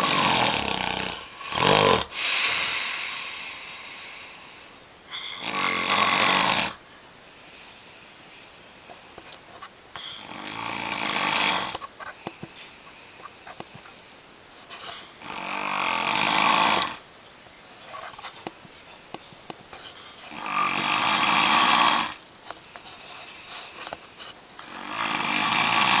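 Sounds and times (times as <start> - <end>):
man snoring: 0.0 - 4.4, 5.1 - 6.8, 10.0 - 11.8, 15.0 - 17.0, 20.3 - 22.2, 24.6 - 26.0.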